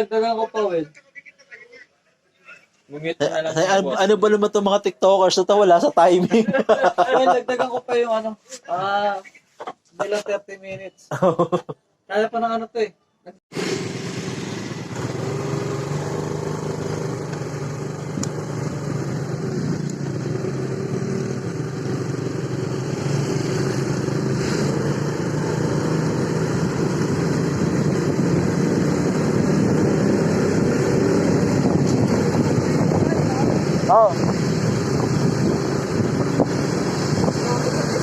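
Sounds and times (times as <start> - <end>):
motorcycle engine running: 13.6 - 38.0
wind rushing over microphone: 21.6 - 38.0.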